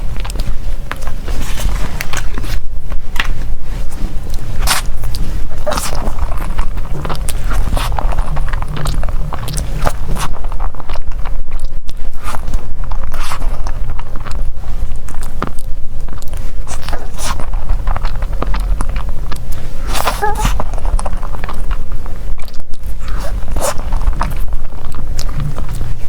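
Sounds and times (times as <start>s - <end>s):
person chewing dessert: 0.0s - 26.0s
steady low rumble: 0.0s - 26.0s.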